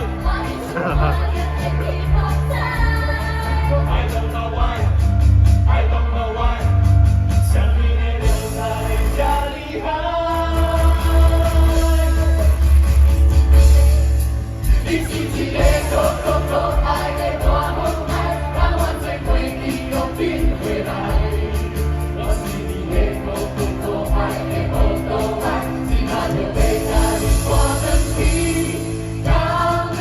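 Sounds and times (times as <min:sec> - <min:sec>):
person singing: 0:00.0 - 0:04.4
song with bass and drums: 0:00.0 - 0:30.0.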